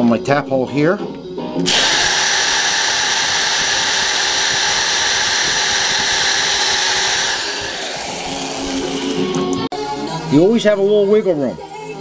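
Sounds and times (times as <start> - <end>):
electric drill drilling into wood: 1.6 - 9.7.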